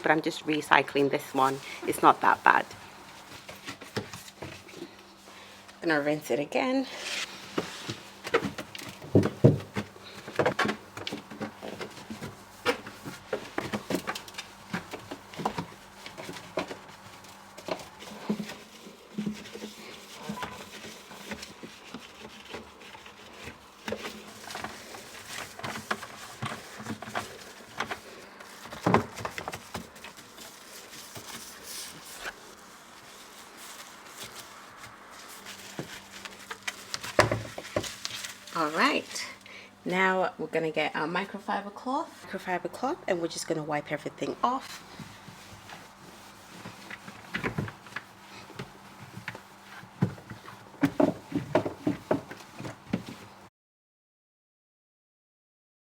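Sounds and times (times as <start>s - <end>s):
cloth rubbing and wiping: 29.6s - 39.2s, 44.6s - 53.5s.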